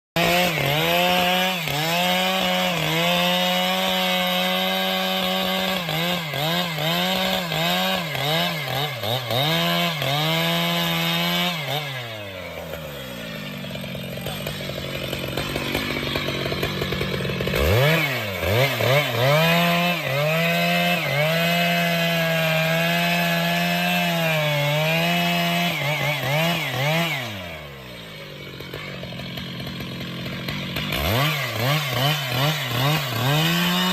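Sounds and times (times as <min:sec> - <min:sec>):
chainsaw cutting wood: 0:00.2 - 0:33.9.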